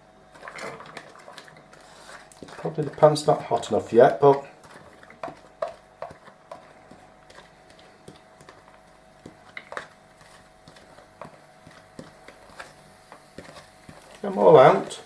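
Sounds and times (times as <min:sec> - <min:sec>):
utensil tapping board and pan: 0:04.3 - 0:15.0.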